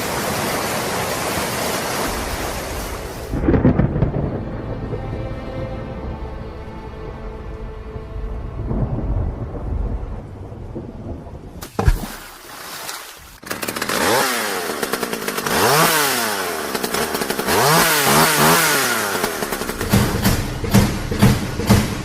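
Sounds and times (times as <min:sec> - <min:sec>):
low rumble: 0:02.2 - 0:11.6, 0:19.5 - 0:22.0
small petrol engine revving: 0:13.4 - 0:21.7.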